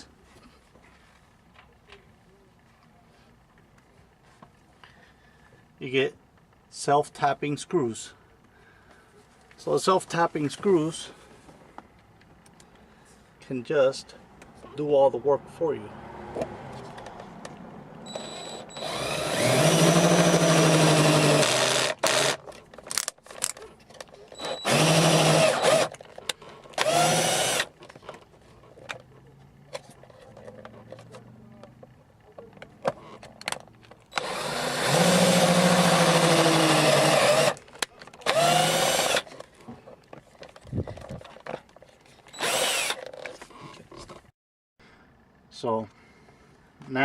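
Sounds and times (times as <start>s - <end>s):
power drill driving screws: 18.1s - 23.0s, 24.3s - 26.0s, 26.7s - 27.7s, 34.1s - 37.6s, 38.2s - 39.4s, 42.3s - 43.2s.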